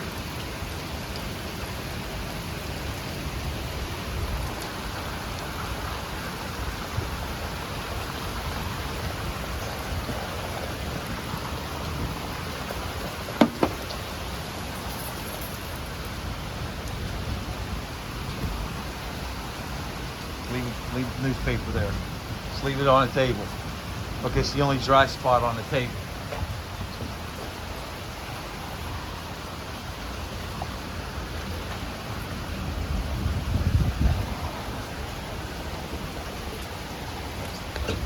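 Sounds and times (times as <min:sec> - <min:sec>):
heavy rain: 0:00.0 - 0:38.0
short sharp knock: 0:13.4 - 0:13.8.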